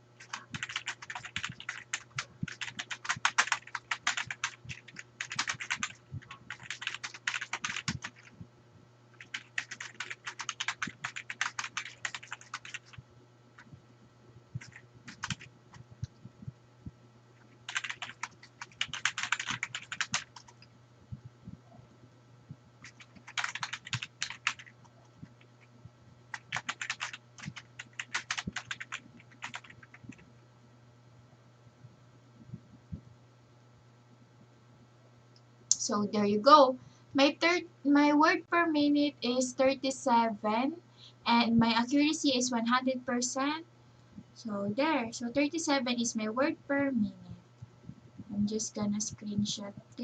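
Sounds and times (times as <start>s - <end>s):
fast typing on a keyboard: 0.2s - 8.3s, 9.1s - 13.0s, 14.6s - 15.8s, 17.4s - 20.7s, 22.8s - 25.6s, 26.3s - 30.3s.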